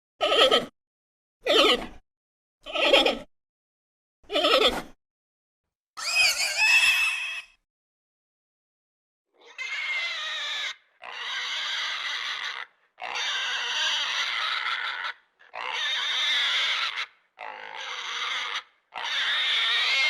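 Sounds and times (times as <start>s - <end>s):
shrill wavering animal calls: 6.0s - 7.6s, 9.4s - 20.0s.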